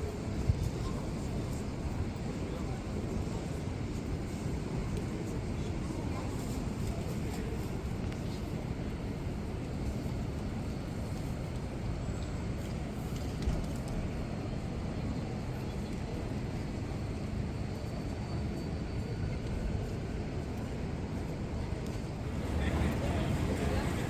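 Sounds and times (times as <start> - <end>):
low rumble of traffic: 22.2 - 24.0.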